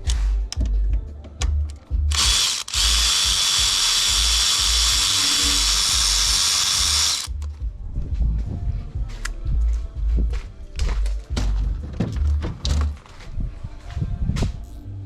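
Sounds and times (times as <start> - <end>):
low music beat: 0.0 - 15.0
power driver spinning: 2.1 - 7.5.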